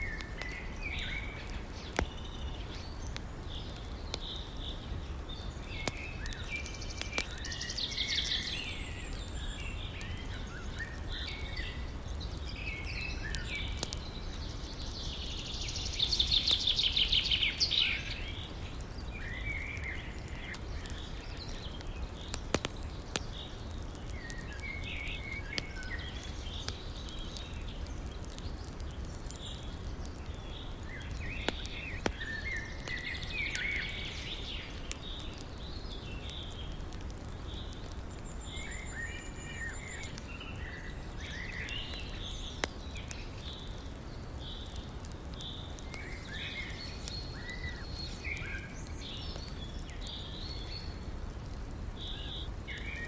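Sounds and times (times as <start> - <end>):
small birds chirping: 0.0 - 53.0
wood fire crackling: 0.0 - 53.0.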